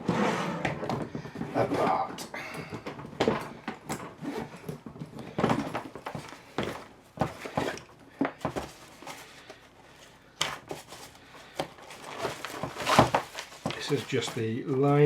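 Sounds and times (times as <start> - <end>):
fabric lining rustling: 8.6 - 14.8.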